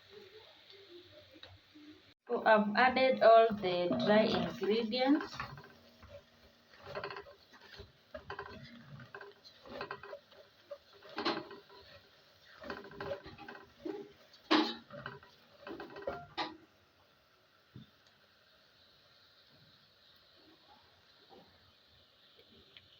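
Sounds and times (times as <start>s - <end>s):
spoon scraping cooking pot: 3.4s - 16.6s.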